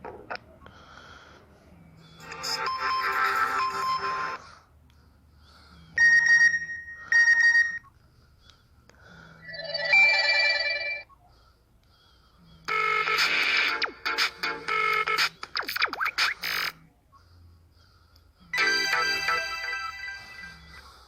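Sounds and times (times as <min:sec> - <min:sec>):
musical ringtone: 0:02.2 - 0:04.6, 0:09.4 - 0:11.0, 0:12.7 - 0:15.3, 0:18.6 - 0:20.8.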